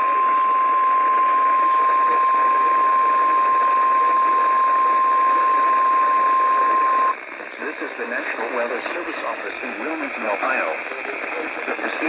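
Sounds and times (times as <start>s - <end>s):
steady high warning alarm tone: 0.0s - 7.3s
radio static hiss: 0.0s - 12.0s.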